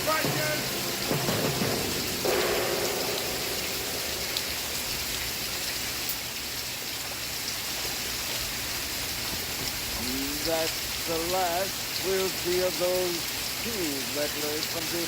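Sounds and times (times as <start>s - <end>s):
rain falling: 0.0s - 15.0s.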